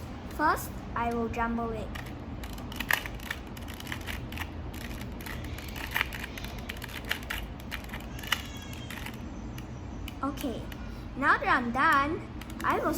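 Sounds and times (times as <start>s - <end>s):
puzzle cube plastic clicks: 1.9s - 10.8s, 12.4s - 12.8s.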